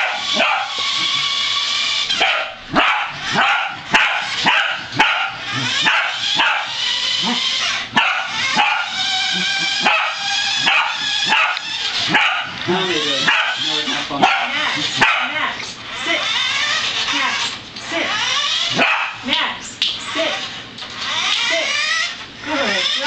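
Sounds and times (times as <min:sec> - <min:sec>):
toy car high-pitched whine: 0:00.0 - 0:19.2, 0:20.1 - 0:23.0
dog barking sharply: 0:02.2 - 0:06.7, 0:09.9 - 0:12.6, 0:18.8 - 0:19.2.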